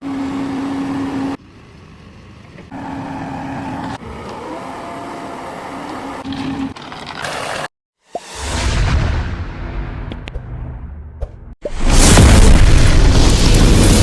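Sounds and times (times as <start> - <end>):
heavy vehicle engine running: 0.0 - 6.2.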